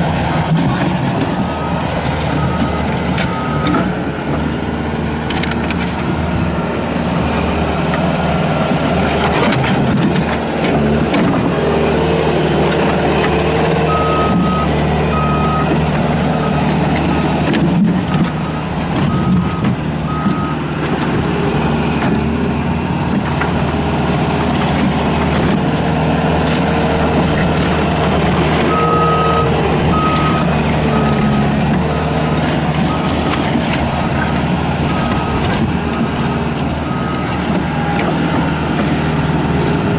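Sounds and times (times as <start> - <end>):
diesel engine running: 0.0 - 39.9
backup alarm beeping: 13.9 - 15.8.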